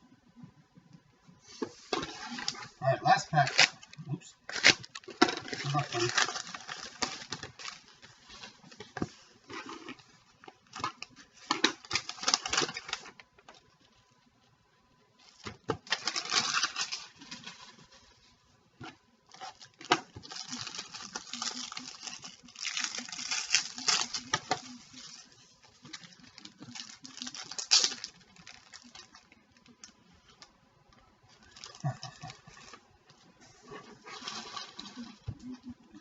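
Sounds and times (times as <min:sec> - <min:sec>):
wrapper crinkling and tearing: 0:01.9 - 0:08.9, 0:09.5 - 0:13.3, 0:15.2 - 0:18.0, 0:19.3 - 0:30.4, 0:31.4 - 0:32.8.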